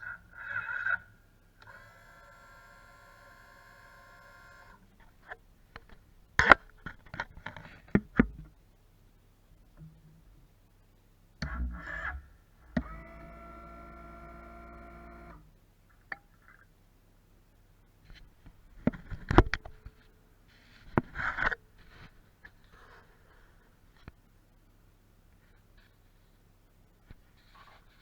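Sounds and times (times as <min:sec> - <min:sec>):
electric starter motor whining: 0:12.8 - 0:15.4.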